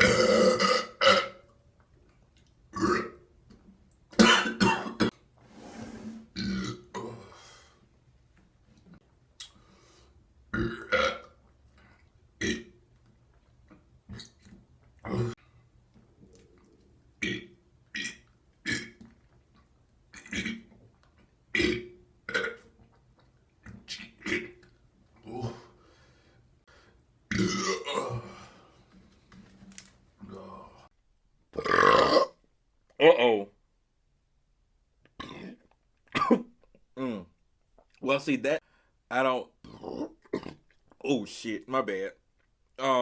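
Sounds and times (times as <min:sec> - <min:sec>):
man burping: 0:00.0 - 0:01.4, 0:04.2 - 0:05.2, 0:06.4 - 0:07.4, 0:10.5 - 0:11.3, 0:15.0 - 0:15.4, 0:21.6 - 0:22.7, 0:25.2 - 0:25.7, 0:27.3 - 0:28.6, 0:31.6 - 0:32.4, 0:35.2 - 0:37.3, 0:39.6 - 0:40.7.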